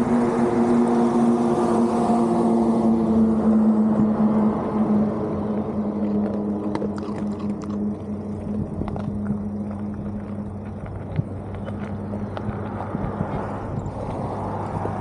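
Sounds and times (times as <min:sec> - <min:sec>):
small ticks and rattles: 0:06.0 - 0:14.0.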